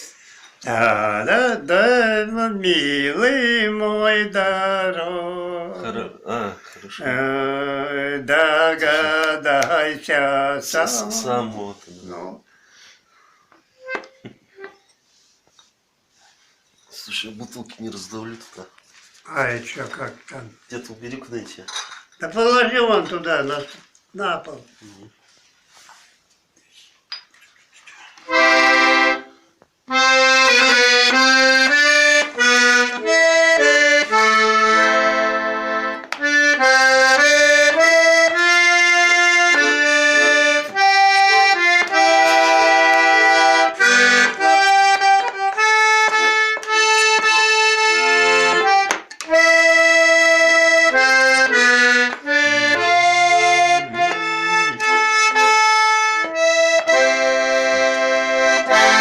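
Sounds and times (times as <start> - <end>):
button accordion playing folk tune: 8.4 - 9.7, 13.8 - 14.8, 28.3 - 59.0.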